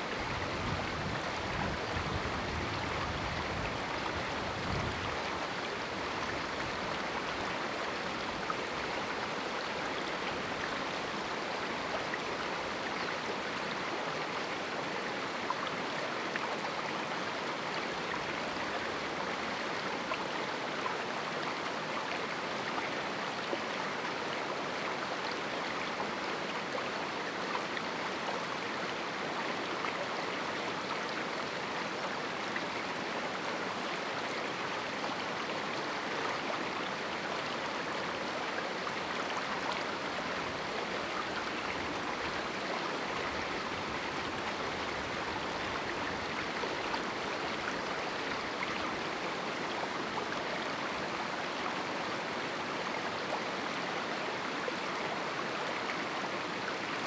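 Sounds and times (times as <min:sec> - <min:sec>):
river water rushing over rocks: 0:00.0 - 0:57.0.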